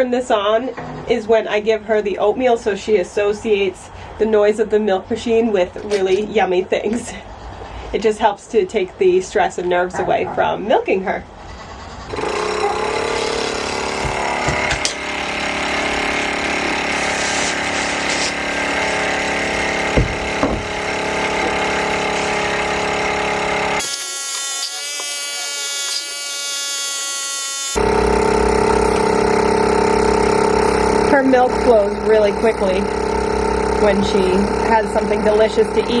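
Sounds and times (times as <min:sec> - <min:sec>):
vacuum pump motor hum: 0:12.1 - 0:24.2, 0:27.2 - 0:36.0.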